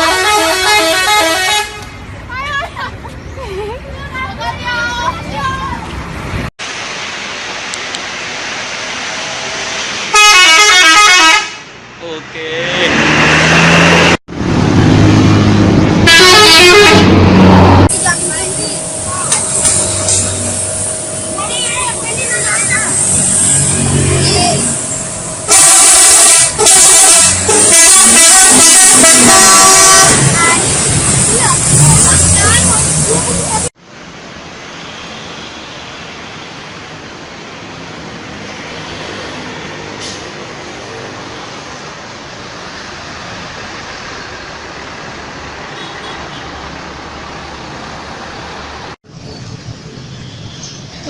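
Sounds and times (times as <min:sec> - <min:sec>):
bus musical horn blasts: 0:00.0 - 0:02.0, 0:10.1 - 0:11.7, 0:16.0 - 0:21.3, 0:23.7 - 0:30.9
road traffic noise: 0:00.0 - 0:51.0.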